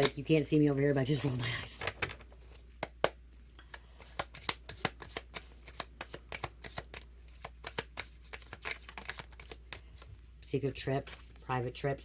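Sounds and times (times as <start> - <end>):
cards being shuffled: 1.1 - 10.2.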